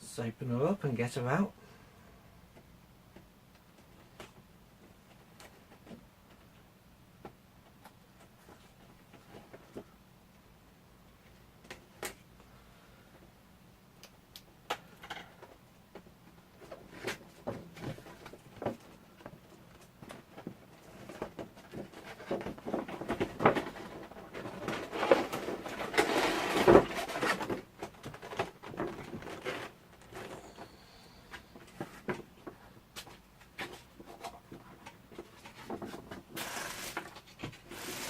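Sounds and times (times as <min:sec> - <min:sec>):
packaging rustling and crinkling: 0:19.7 - 0:30.7, 0:35.2 - 0:38.0.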